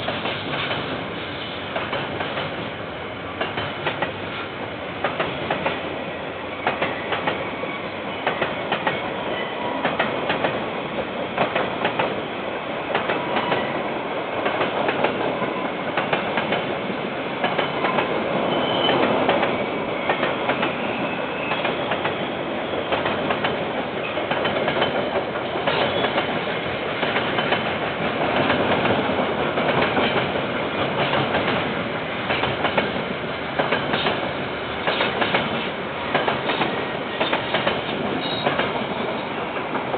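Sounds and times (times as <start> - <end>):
train wagons clattering over rail joints: 3.4 - 4.2, 6.6 - 7.4, 8.2 - 9.1, 22.8 - 33.0, 33.6 - 39.9.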